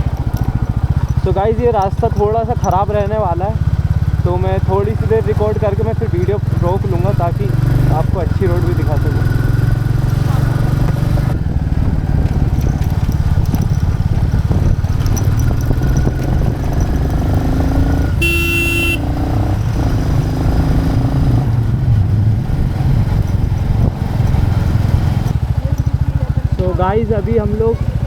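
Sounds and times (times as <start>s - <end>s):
motorcycle engine running: 0.0s - 28.0s
vehicle horn honking: 18.2s - 19.4s.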